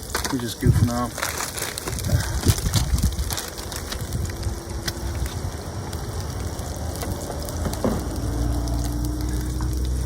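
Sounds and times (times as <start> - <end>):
food sizzling in a pan: 3.2 - 10.0.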